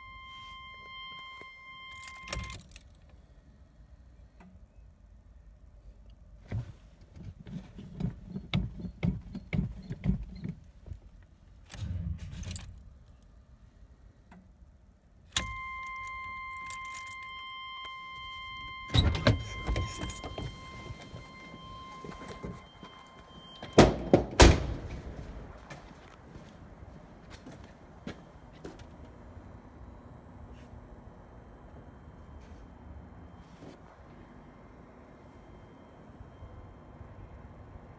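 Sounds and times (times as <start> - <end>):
electronic warning tone: 0.0 - 2.5, 15.4 - 24.3
keys jangling and clicking: 15.9 - 17.4
loud thuds: 23.7 - 25.7.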